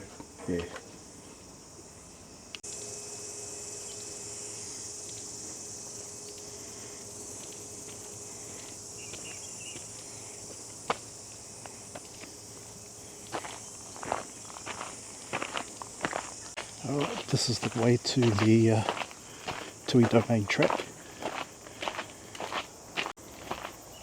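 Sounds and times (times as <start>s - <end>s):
insects chirring: 0.0s - 24.0s
footsteps: 7.4s - 23.8s.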